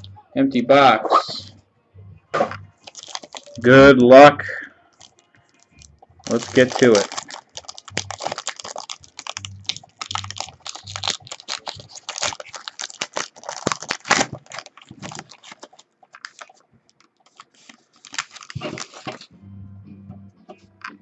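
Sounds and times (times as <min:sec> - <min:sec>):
cards clicking and rustling: 0:02.4 - 0:03.7, 0:05.0 - 0:19.3
wrapper crinkling: 0:02.8 - 0:03.8, 0:04.9 - 0:19.3.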